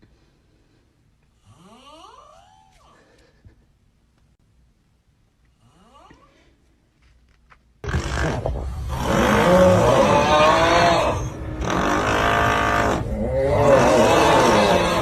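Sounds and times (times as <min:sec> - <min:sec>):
person snoring loudly: 0:07.8 - 0:15.0.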